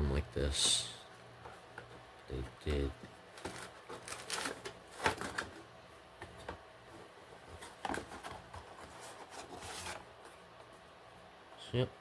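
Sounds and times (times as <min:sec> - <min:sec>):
cardboard box rustling: 0:07.0 - 0:10.2
cardboard scraping: 0:07.4 - 0:10.2.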